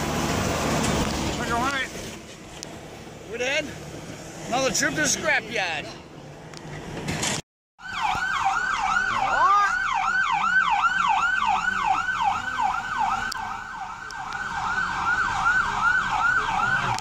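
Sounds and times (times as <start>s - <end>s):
electronic siren yelping: 7.8s - 17.0s.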